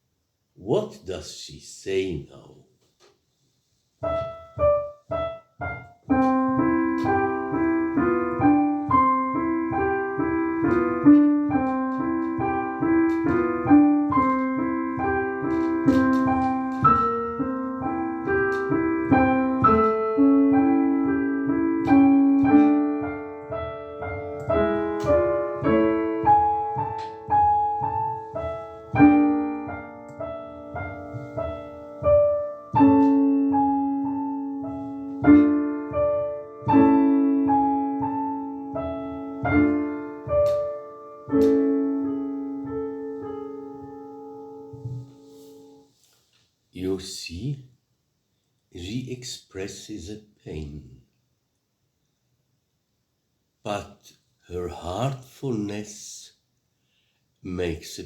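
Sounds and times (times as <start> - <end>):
solo piano: 4.0 - 46.0.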